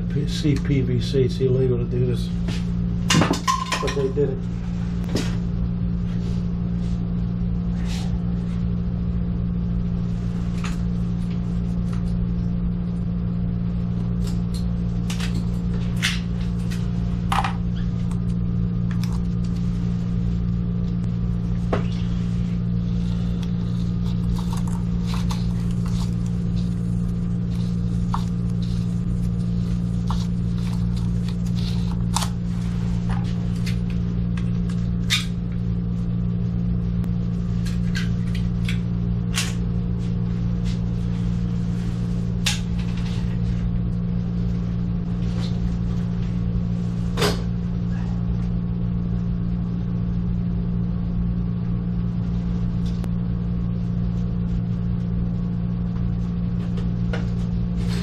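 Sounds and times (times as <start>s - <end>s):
low electric motor hum: 0.0s - 58.0s.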